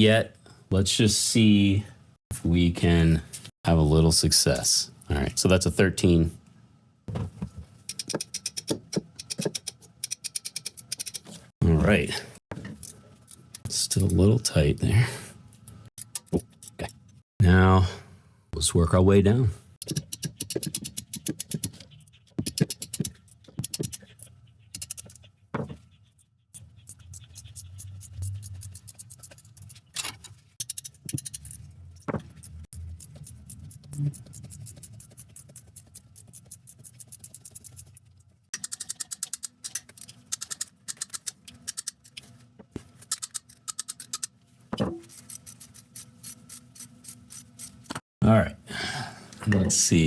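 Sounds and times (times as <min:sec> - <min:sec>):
hand ratchet clicking: 0:07.9 - 0:11.2, 0:30.6 - 0:31.6, 0:38.6 - 0:42.2, 0:43.1 - 0:44.3.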